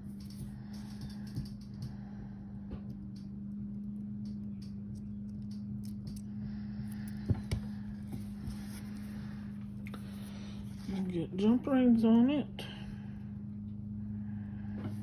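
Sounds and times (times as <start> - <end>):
steady low hum: 0.0 - 15.0
jewellery parts and tools clicking: 4.2 - 7.6.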